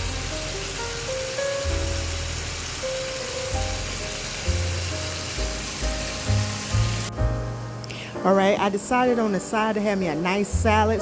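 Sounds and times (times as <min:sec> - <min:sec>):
vegetables sizzling on a griddle: 0:00.0 - 0:07.7
background music: 0:00.0 - 0:11.0.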